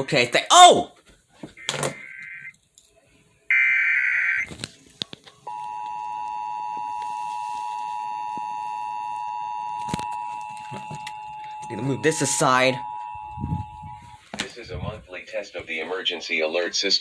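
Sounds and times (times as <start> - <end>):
two-tone alert signal: 5.5 - 14.2.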